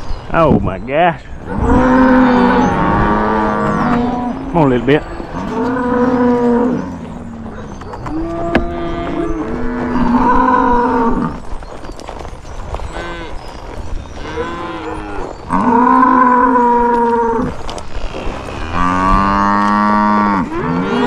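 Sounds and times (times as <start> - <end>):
cattle mooing: 1.5 - 11.4, 14.2 - 21.0.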